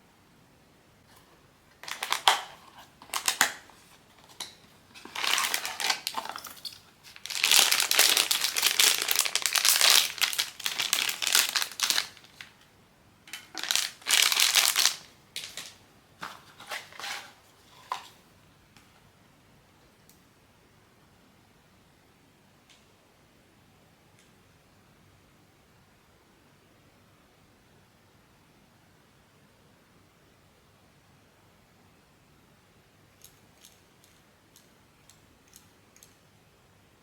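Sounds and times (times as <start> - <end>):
packaging wrapper crinkling: 1.7 - 12.6, 13.3 - 17.3.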